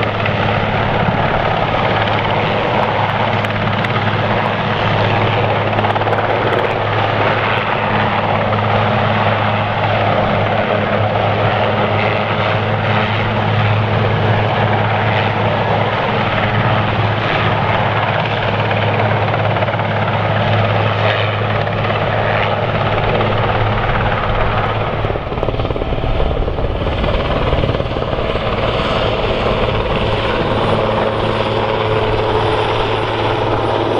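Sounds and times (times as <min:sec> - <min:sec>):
helicopter drone: 0:00.0 - 0:33.9
deep rumble: 0:21.6 - 0:33.8.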